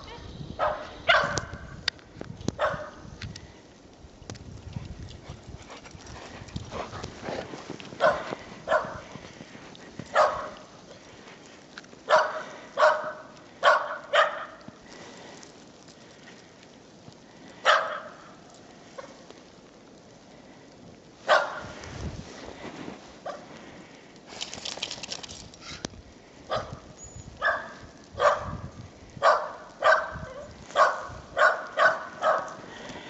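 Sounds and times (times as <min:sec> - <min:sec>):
dog barking: 0:00.0 - 0:01.6, 0:02.6 - 0:03.0, 0:08.0 - 0:09.1, 0:10.1 - 0:10.6, 0:12.1 - 0:14.6, 0:17.6 - 0:18.3, 0:21.3 - 0:21.7, 0:26.5 - 0:26.8, 0:27.4 - 0:28.6, 0:29.2 - 0:32.6.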